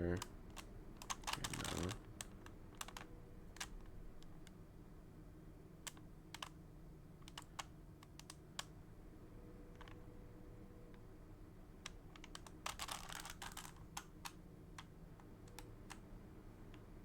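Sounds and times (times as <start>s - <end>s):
faint steady hum: 0.0s - 17.0s
plastic puzzle cube clicking: 0.2s - 4.3s, 5.8s - 6.6s, 7.2s - 8.7s, 11.8s - 14.9s.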